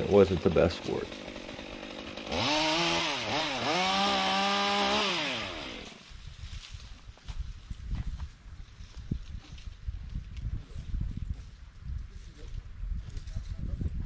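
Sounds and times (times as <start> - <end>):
chainsaw revving: 0.0 - 6.0.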